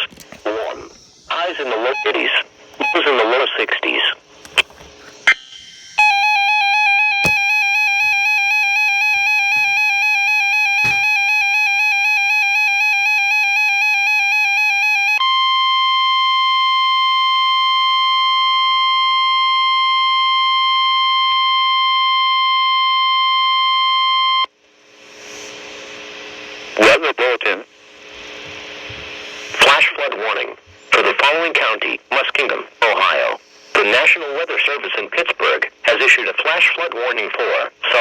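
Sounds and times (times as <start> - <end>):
steady alarm tone: 0.8 - 3.4, 5.2 - 23.6
warbling electronic alarm: 1.4 - 3.2, 5.3 - 24.4.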